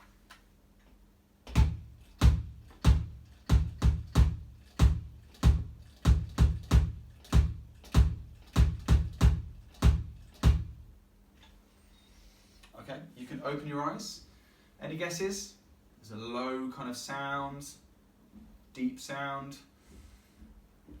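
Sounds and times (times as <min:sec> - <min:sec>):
electronic kick drum: 0:01.5 - 0:10.9.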